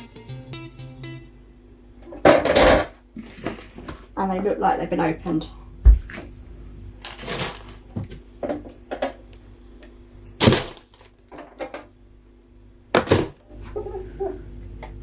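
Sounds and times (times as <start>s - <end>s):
items knocking and clattering: 2.1s - 4.0s, 7.1s - 9.2s, 10.4s - 11.9s.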